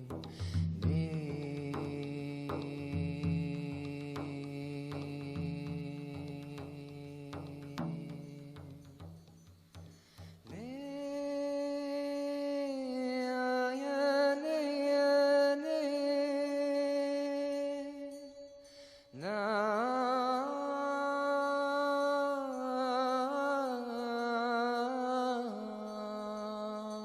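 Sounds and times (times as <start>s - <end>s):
person singing long held notes: 0.0s - 9.1s, 10.3s - 18.4s.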